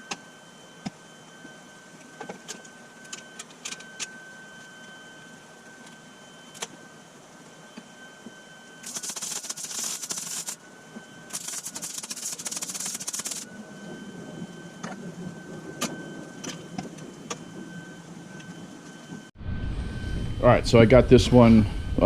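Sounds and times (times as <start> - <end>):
faint high whine: 0.0 - 22.0
welding arc crackling: 8.8 - 10.6, 11.3 - 13.5.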